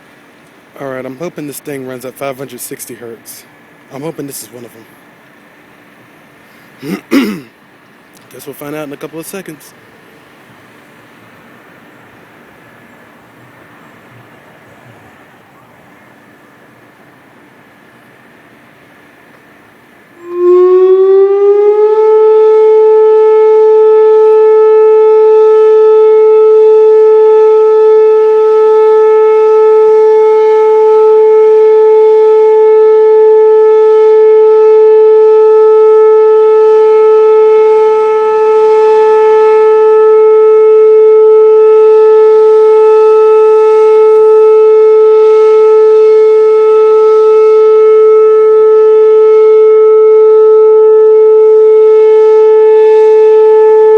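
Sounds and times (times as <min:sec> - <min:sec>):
electronic warning siren: 0:20.1 - 0:53.9.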